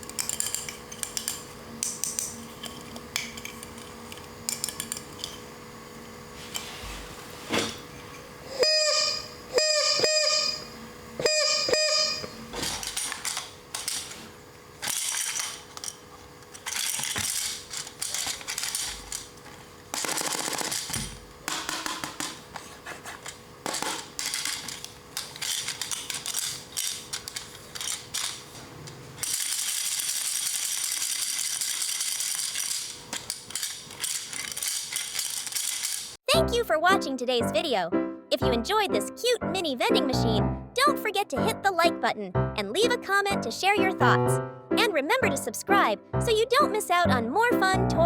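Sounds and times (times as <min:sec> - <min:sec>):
plastic clicks and rattles: 0:00.0 - 0:05.4, 0:14.8 - 0:36.2.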